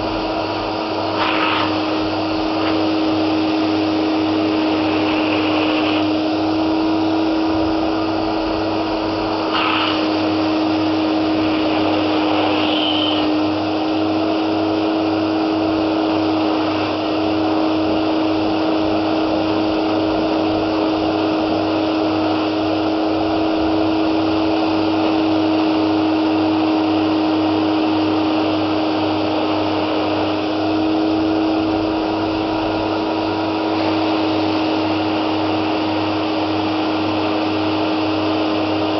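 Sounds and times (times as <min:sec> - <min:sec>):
carpet washer motor whining: 0:00.0 - 0:38.9.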